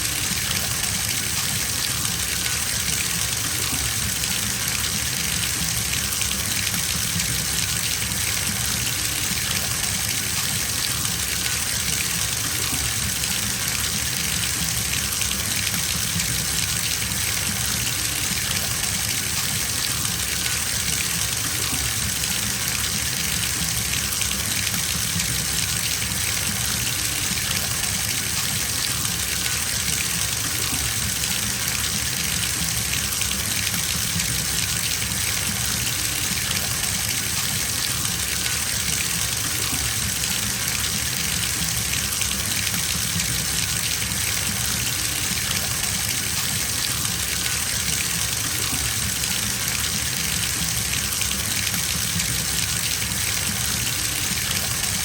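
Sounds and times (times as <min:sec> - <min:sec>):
water pouring into bathtub: 0:00.0 - 0:55.0.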